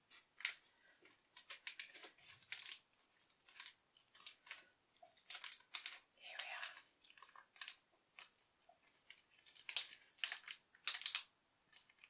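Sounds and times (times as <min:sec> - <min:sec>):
snack wrapper crinkling: 0:03.4 - 0:12.0.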